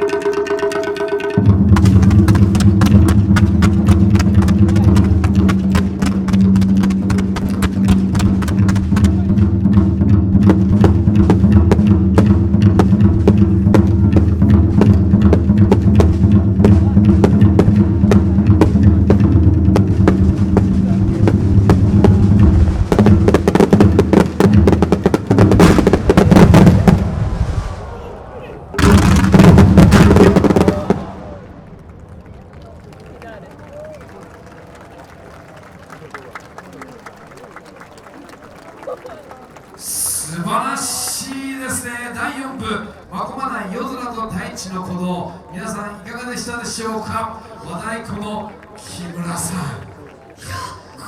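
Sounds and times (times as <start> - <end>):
taiko drumming: 0.0 - 27.4, 28.8 - 31.5
backing track: 0.0 - 32.1.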